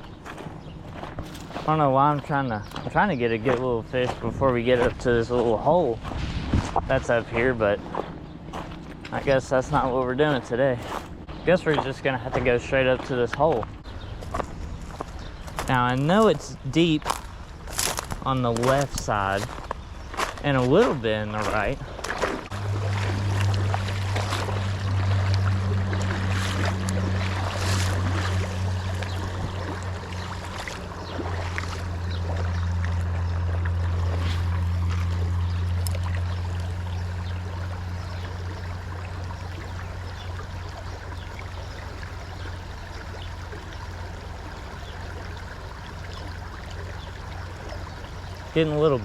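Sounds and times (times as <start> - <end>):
steady low hum: 0.0 - 49.0
flowing creek water: 0.4 - 6.2, 6.9 - 49.0
short knocks or splashes: 21.4 - 35.2.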